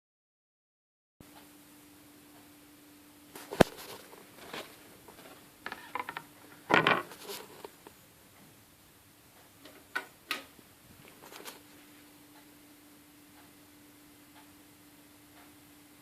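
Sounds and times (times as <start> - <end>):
steady low hum: 1.2 - 16.0.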